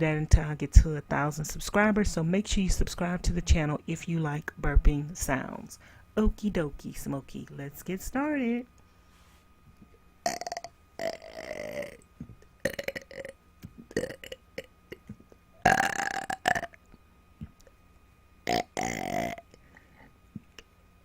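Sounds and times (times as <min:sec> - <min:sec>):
woman burping: 0:10.2 - 0:12.0, 0:12.6 - 0:16.8, 0:18.5 - 0:19.5.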